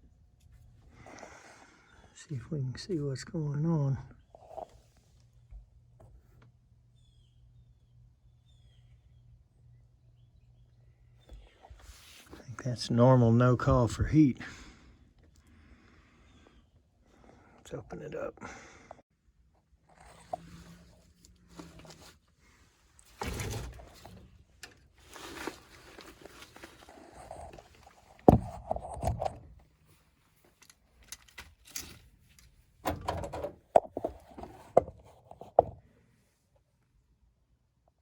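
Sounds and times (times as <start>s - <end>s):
sheet-metal panel thunks and rattles: 32.8s - 34.1s.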